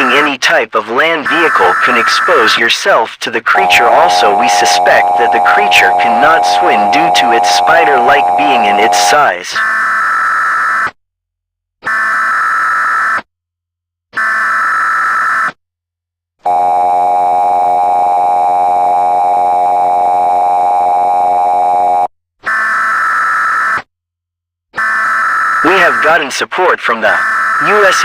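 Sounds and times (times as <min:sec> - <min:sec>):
two-tone attention signal: 0:03.5 - 0:09.3, 0:16.5 - 0:22.1
digital data bursts: 0:03.5 - 0:09.4, 0:25.4 - 0:26.4, 0:27.1 - 0:28.0.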